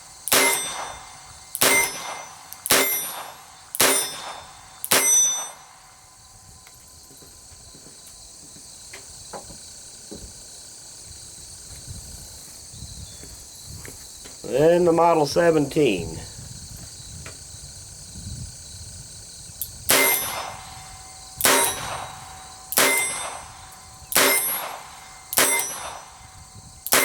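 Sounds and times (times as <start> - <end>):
revolver gunshots: 0.2 - 6.1, 19.8 - 27.0.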